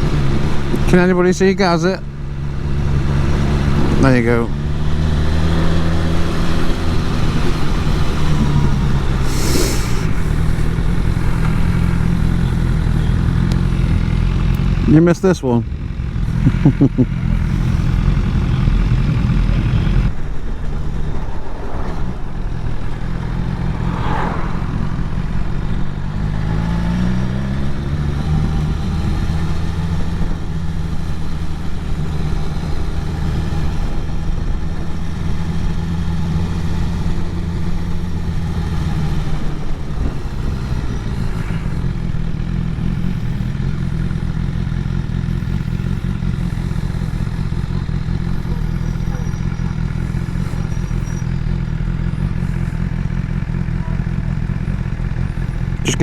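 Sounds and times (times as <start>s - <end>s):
motorcycle engine running: 0.0s - 56.0s
wind noise: 6.2s - 12.8s, 19.1s - 26.1s.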